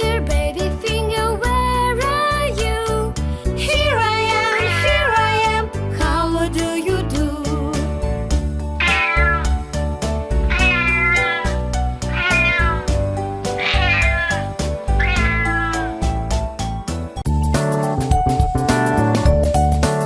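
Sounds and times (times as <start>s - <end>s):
upbeat children's music: 0.0s - 20.0s
drawn-out animal calls: 4.2s - 5.5s, 8.8s - 9.7s, 10.5s - 16.2s.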